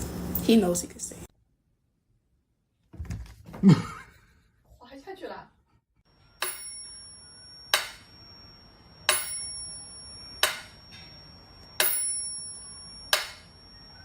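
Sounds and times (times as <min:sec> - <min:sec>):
bell-like metal clinks: 0:06.4 - 0:08.0, 0:09.1 - 0:11.0, 0:11.8 - 0:13.8.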